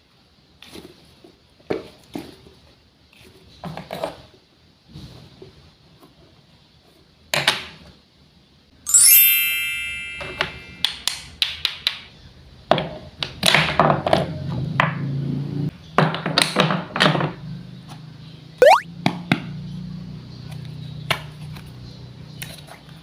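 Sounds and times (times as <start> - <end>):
bright ringing ping: 8.9 - 11.0.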